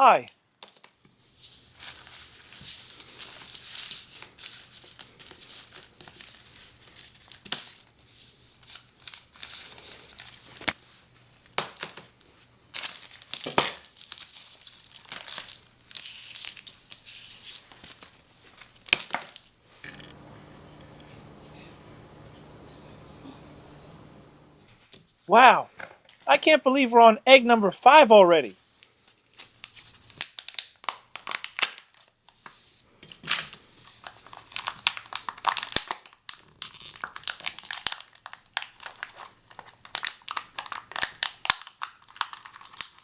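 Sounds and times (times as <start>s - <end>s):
wrapper crinkling and tearing: 8.6s - 10.8s, 12.8s - 19.4s, 29.3s - 32.2s, 33.3s - 43.0s.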